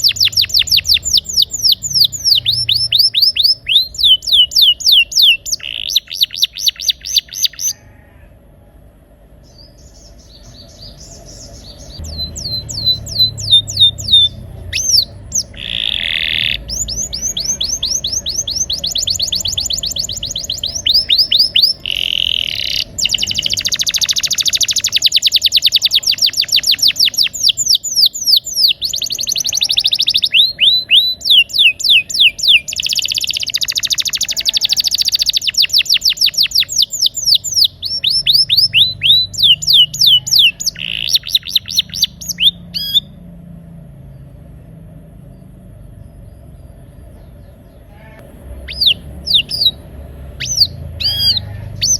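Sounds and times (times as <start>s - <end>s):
canary singing trills: 0.0s - 8.1s, 9.3s - 51.9s.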